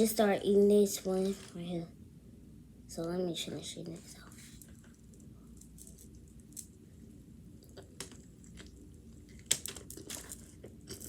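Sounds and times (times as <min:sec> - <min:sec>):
person chewing: 0:07.6 - 0:11.0
crunchy bite: 0:07.7 - 0:11.0.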